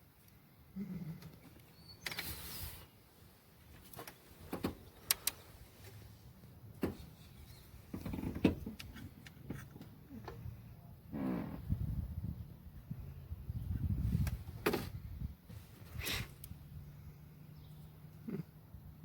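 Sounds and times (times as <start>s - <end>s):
rustling scrape: 2.1s - 3.0s.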